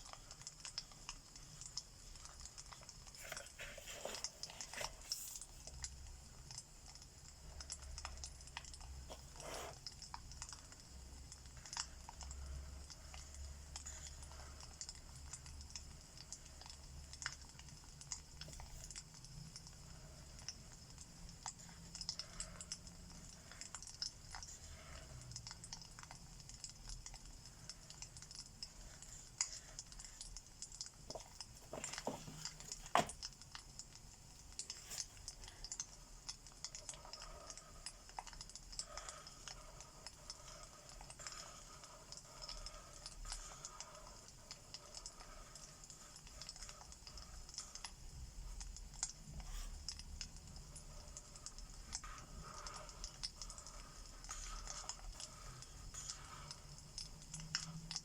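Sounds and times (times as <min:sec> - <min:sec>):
fireplace crackling: 0:30.0 - 0:37.5.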